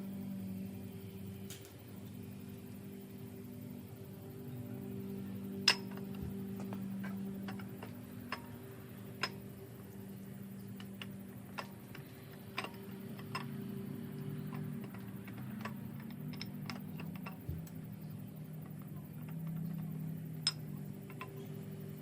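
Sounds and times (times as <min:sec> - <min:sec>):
steady low hum: 0:00.0 - 0:22.0
metallic clicks of hand tools: 0:05.7 - 0:17.8, 0:18.7 - 0:21.6.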